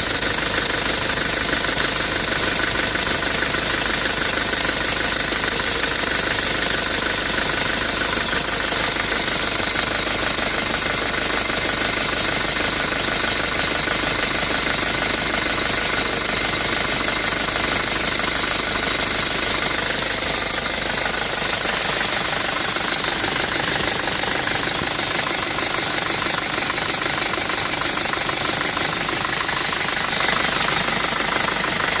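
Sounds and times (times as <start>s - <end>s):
engine running with clatter: 0.0s - 32.0s.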